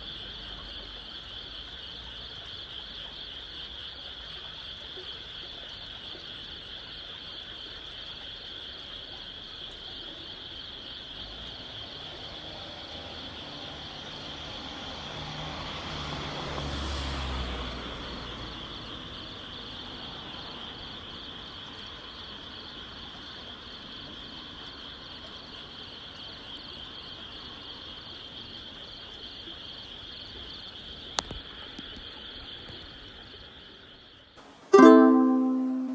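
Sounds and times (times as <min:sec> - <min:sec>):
frogs trilling: 0:00.0 - 0:34.4
vehicle passing: 0:14.3 - 0:18.8.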